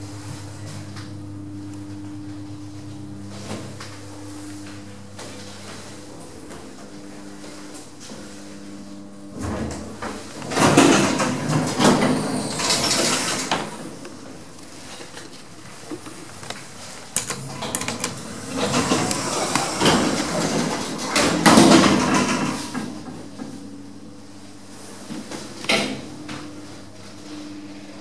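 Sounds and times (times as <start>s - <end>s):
steady hum: 0.0s - 28.0s
lift doors rattling and clunking: 9.7s - 14.0s, 17.3s - 23.0s.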